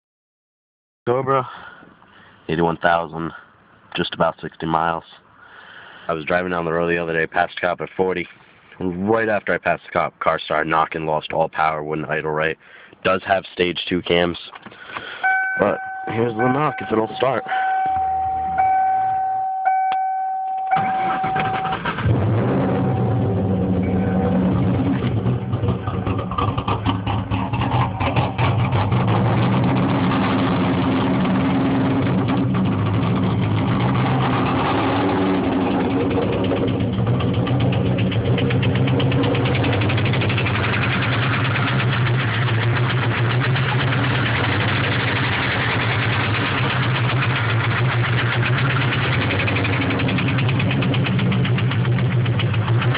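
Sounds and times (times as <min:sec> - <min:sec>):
engine cranking and idling: 0:14.6 - 0:19.9, 0:20.7 - 0:52.9
electronic warning tone: 0:15.2 - 0:21.9, 0:22.7 - 0:24.4
engine knocking: 0:25.0 - 0:29.2, 0:31.9 - 0:52.9.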